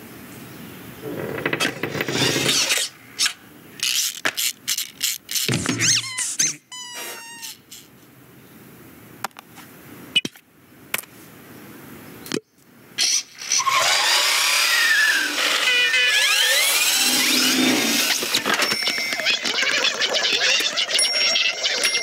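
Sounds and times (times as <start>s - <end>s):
squeaks and rattles of toys: 1.0s - 8.0s, 13.0s - 22.0s
toy clicks and knocks: 3.8s - 6.2s, 18.0s - 22.0s
falling cartoon squeal: 5.6s - 7.9s, 13.0s - 22.0s.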